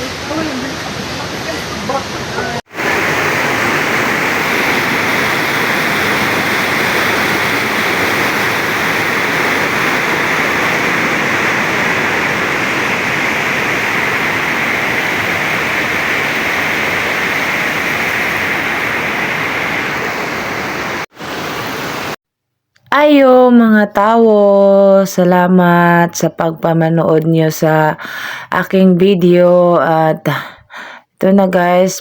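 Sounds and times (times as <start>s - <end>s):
waterfall rushing: 0.0s - 22.2s.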